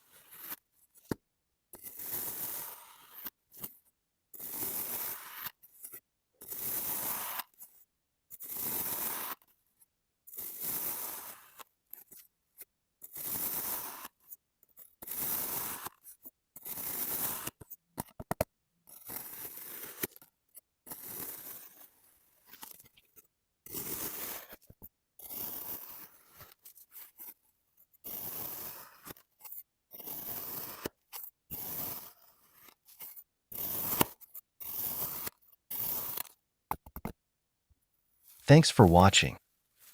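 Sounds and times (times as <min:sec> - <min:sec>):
crunchy scraping of sand being cut: 0:01.8 - 0:03.2, 0:04.4 - 0:05.6, 0:10.6 - 0:11.6, 0:30.1 - 0:30.8.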